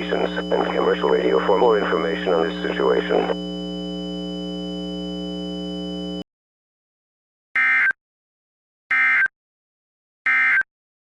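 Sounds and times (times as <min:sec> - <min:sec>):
digital data tone bursts: 0:00.0 - 0:03.4.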